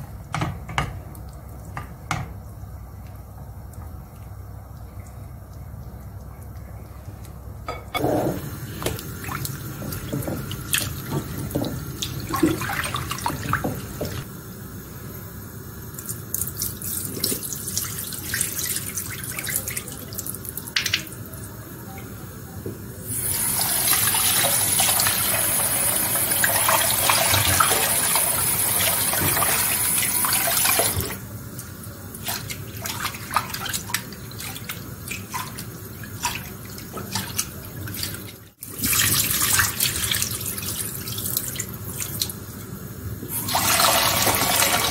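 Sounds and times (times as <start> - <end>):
dishes clinking and knocking: 7.7 - 9.0, 9.8 - 12.6
sink tap running: 7.7 - 14.3, 23.1 - 31.8, 33.4 - 44.9.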